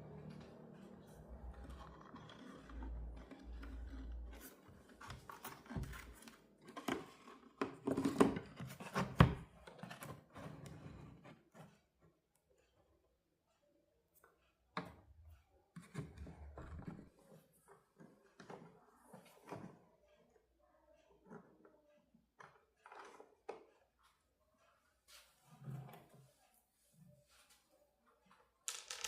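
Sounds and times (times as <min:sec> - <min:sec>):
clicks and scrapes on plastic parts: 0:01.0 - 0:12.8, 0:21.2 - 0:24.2.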